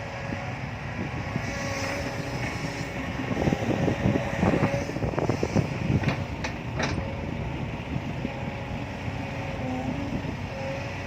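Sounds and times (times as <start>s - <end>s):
heavy machinery diesel engine: 0.0s - 11.0s
wind buffeting microphone: 0.1s - 11.0s
clunks and sharp knocks: 5.9s - 7.2s.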